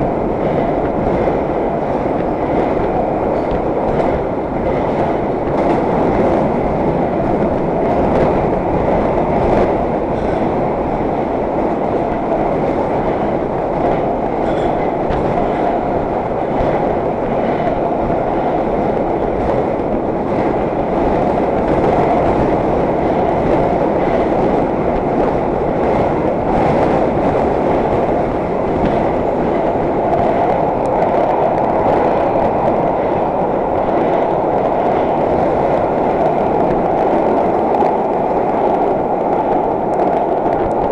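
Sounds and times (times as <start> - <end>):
subway train wheels rumbling: 0.0 - 40.9
clicks over rail joints: 11.6 - 33.2.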